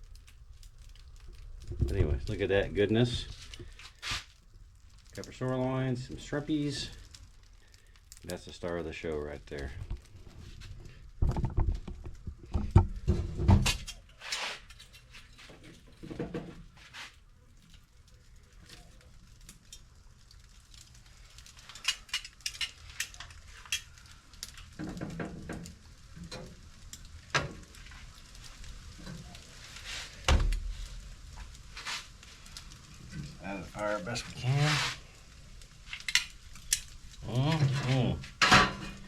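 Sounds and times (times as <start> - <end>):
metal tongs clinking on grill grate: 21.7 - 23.9, 35.9 - 39.0.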